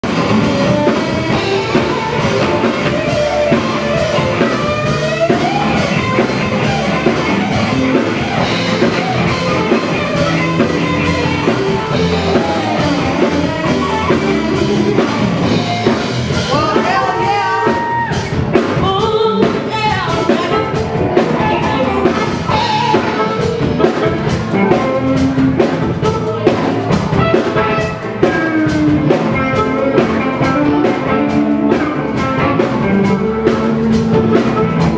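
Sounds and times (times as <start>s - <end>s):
drum kit: 0.0s - 34.9s
electric guitar: 0.0s - 34.9s
person singing: 10.0s - 28.8s.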